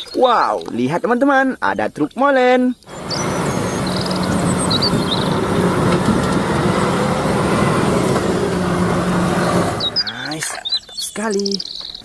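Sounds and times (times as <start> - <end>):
motor hum: 2.9 - 10.1.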